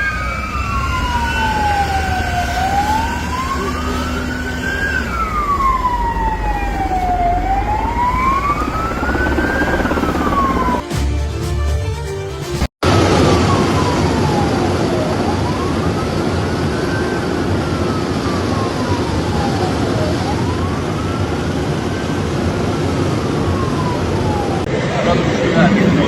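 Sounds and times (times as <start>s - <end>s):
emergency vehicle siren wailing: 0.0s - 10.8s, 12.9s - 26.0s
steady rumbling noise: 24.7s - 26.0s.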